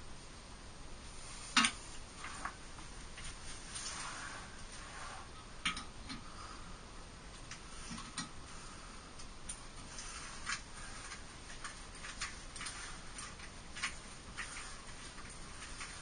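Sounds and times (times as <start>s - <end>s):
steady hiss: 0.0s - 16.0s.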